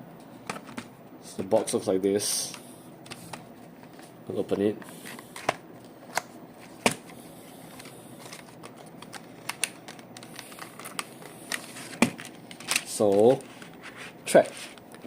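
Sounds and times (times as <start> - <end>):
packaging clicks and rustles: 5.0 - 15.0.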